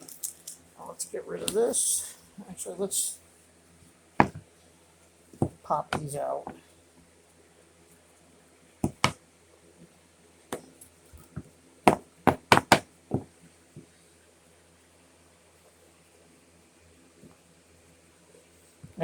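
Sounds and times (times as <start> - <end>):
wooden knocks and clicks: 4.2 - 4.4, 5.4 - 6.1, 8.8 - 9.2, 11.9 - 13.3.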